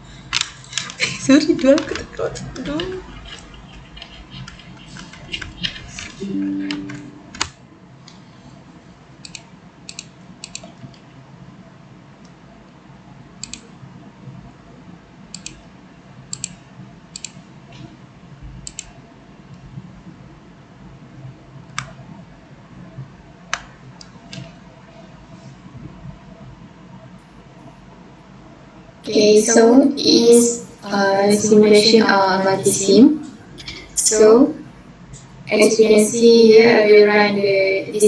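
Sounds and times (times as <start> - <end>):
faint steady hum: 6.2 - 7.5, 27.6 - 38.0.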